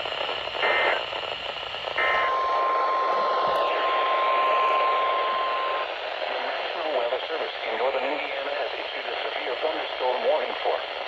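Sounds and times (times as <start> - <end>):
steady alarm tone: 0.0 - 7.1
radio hiss: 0.0 - 11.0
warbling digital data bursts: 0.6 - 7.3.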